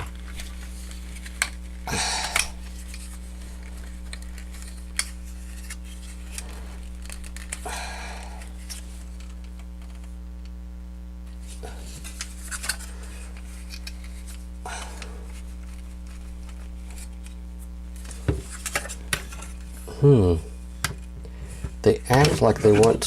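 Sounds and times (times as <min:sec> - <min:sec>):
plastic parts scraping: 0:00.0 - 0:10.1, 0:11.4 - 0:17.3, 0:20.8 - 0:23.0
steady low hum: 0:00.0 - 0:23.0.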